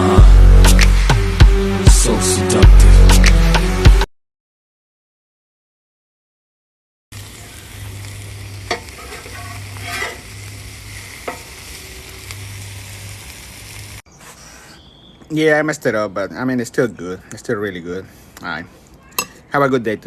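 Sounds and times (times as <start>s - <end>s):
food sizzling in a pan: 0.0s - 2.4s, 7.1s - 14.0s.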